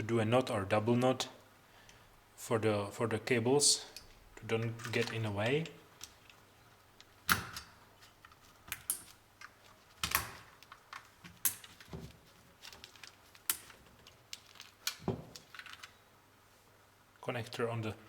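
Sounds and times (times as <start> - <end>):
handling computer parts: 4.4 - 16.0.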